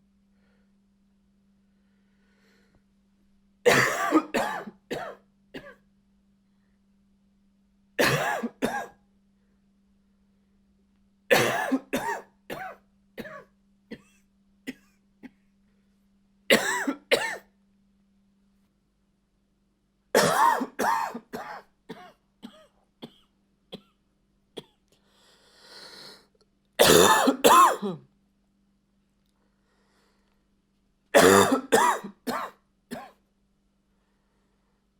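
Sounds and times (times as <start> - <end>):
breath: 0.3 - 0.8, 1.7 - 2.9, 24.9 - 26.4, 29.4 - 30.5, 33.9 - 34.9
man coughing: 3.7 - 5.8, 8.0 - 8.9, 11.3 - 15.4, 16.5 - 17.5, 20.2 - 24.0, 26.8 - 28.0, 31.2 - 33.2.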